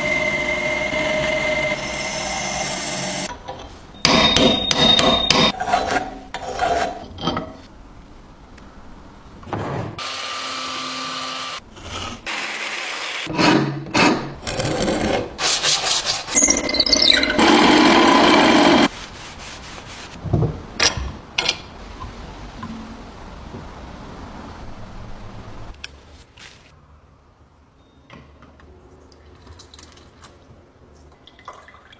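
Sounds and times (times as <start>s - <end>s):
tools rasping and scraping: 0.0s - 3.3s, 4.7s - 7.6s, 11.8s - 18.9s.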